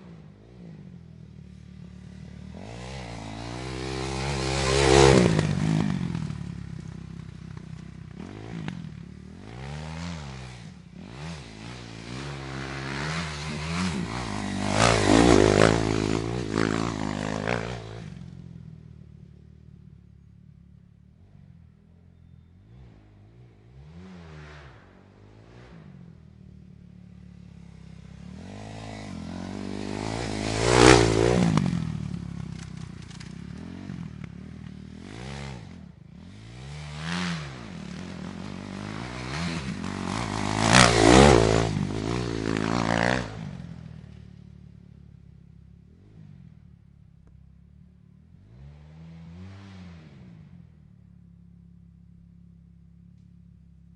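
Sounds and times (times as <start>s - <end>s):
dirt bike engines revving: 0.0s - 19.0s, 21.2s - 45.0s.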